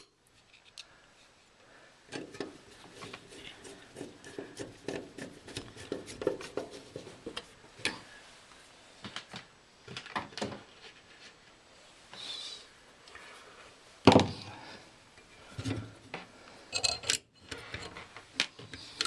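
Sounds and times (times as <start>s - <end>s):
metal parts clicking and scraping: 0.0s - 0.9s, 16.7s - 18.1s.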